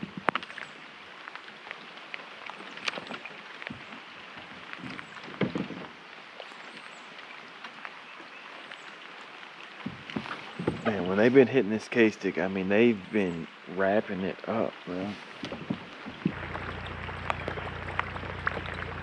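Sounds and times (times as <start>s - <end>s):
light rain ticks: 0.0s - 19.0s
rain hiss: 0.0s - 19.0s
gear knocking and rustling: 15.3s - 19.0s.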